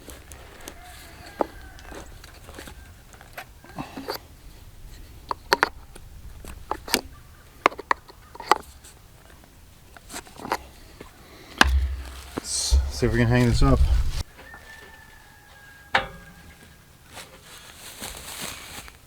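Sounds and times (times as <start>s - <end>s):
light clicks and knocks on metal: 11.6s - 13.8s.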